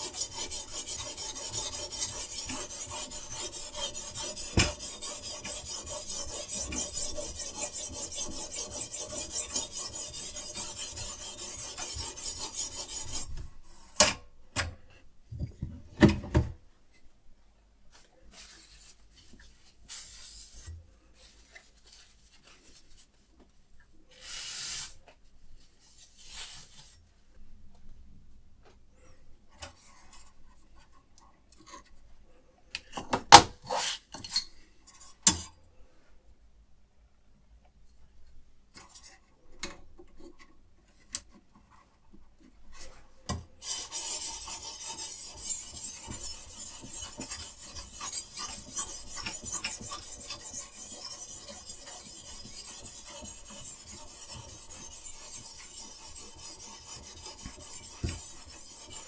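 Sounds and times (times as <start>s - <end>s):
sharpening stone rasping on knife blade: 0.0s - 13.3s, 43.6s - 59.0s.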